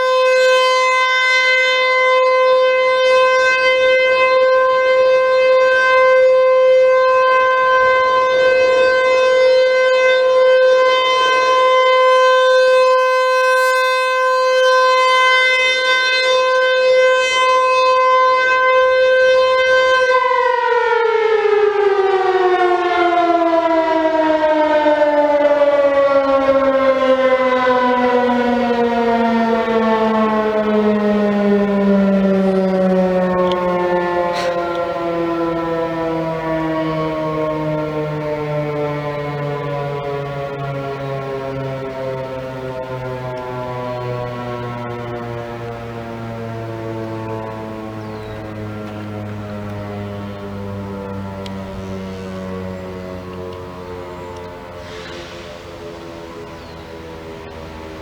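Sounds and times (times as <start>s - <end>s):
siren steady tone winding down: 0.0s - 58.0s.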